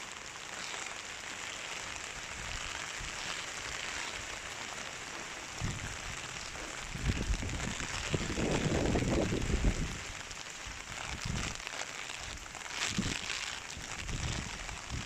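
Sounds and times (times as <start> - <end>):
heavy rain falling: 0.0 - 15.0
strong wind gusts rumbling: 6.8 - 10.0.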